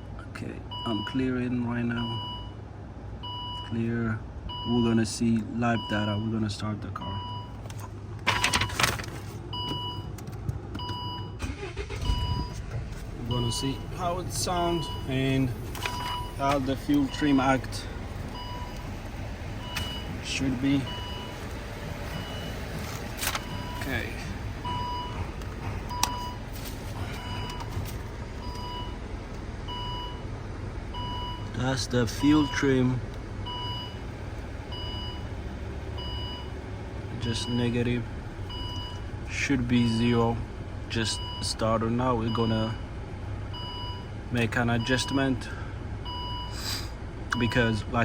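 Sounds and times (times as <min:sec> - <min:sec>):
steady low hum: 0:07.1 - 0:37.1
car engine cranking and starting: 0:07.2 - 0:45.2.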